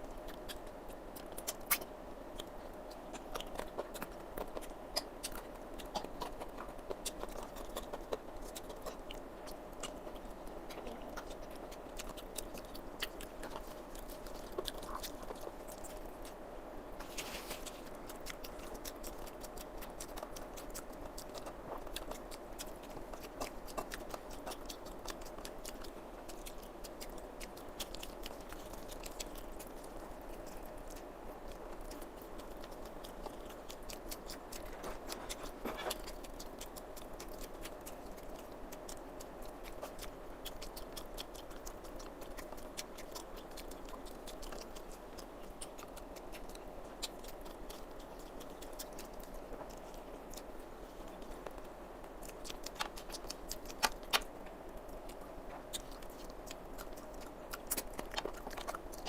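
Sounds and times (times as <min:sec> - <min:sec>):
person chewing food: 0:00.0 - 0:59.0
mouth clicks and smacks: 0:51.2 - 0:59.0.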